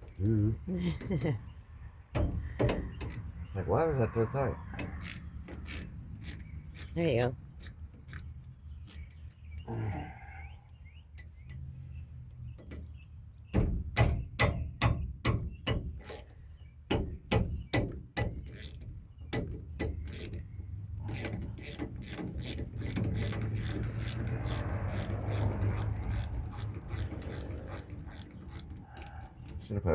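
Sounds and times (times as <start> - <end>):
socket ratchet clicking: 5.0 - 7.0, 18.2 - 29.6.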